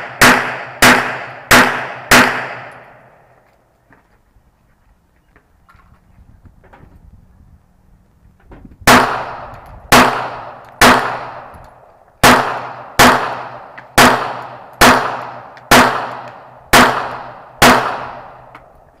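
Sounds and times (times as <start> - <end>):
pistol shots: 0.0 - 3.1, 8.9 - 11.6, 12.2 - 18.5.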